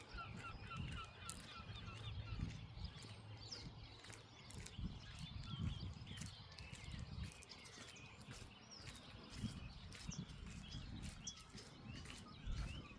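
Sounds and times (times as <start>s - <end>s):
small birds chirping: 0.0s - 12.9s.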